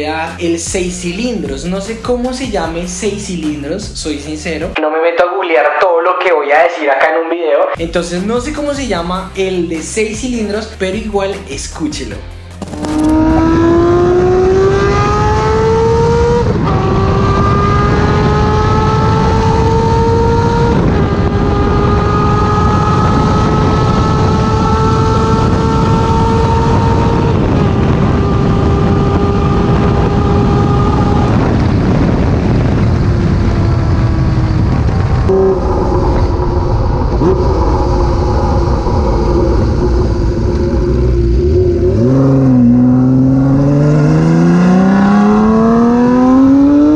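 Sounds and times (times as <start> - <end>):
motorcycle engine accelerating: 12.5 - 46.9.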